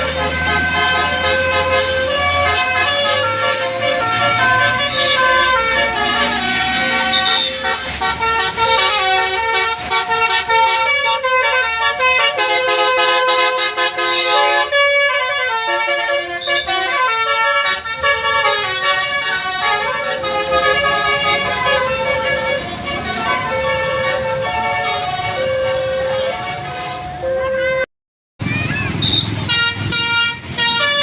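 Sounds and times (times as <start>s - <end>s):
bus musical horn playing a tune: 0.0s - 27.9s, 28.9s - 31.0s.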